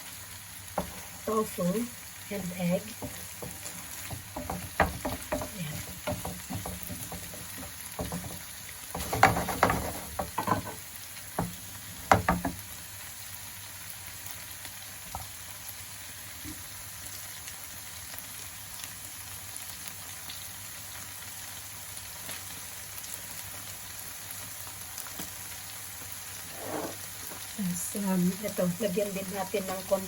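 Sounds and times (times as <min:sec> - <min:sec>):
food sizzling in a pan: 0:00.0 - 0:30.0
sharp knocks: 0:03.0 - 0:08.4, 0:11.4 - 0:12.6.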